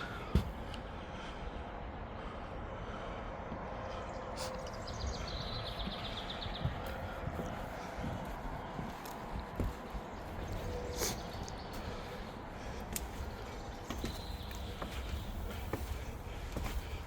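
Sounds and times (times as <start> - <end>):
steady background noise: 0.0 - 17.0
footsteps walking: 5.6 - 17.0.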